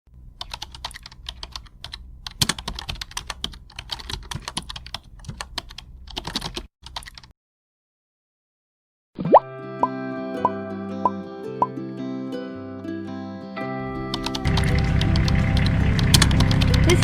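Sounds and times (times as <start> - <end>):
low steady hum: 0.1 - 6.2, 13.9 - 17.0
computer keyboard typing: 0.4 - 7.3, 14.1 - 17.0.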